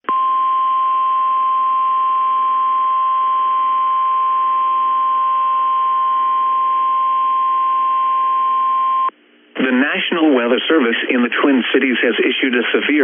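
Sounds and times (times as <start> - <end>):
faint radio hiss: 9.1 - 13.0.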